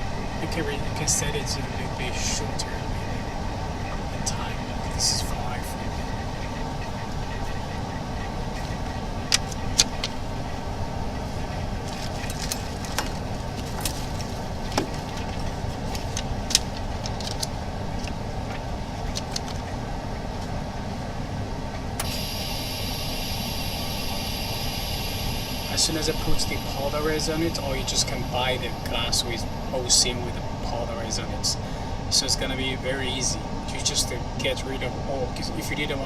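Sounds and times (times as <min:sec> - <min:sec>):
laminator machine humming: 0:00.0 - 0:36.0
high hiss: 0:22.0 - 0:31.6.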